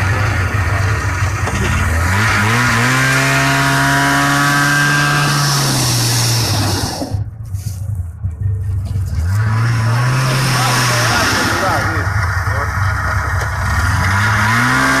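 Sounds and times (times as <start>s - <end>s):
vehicle engine revving: 0.0s - 15.0s.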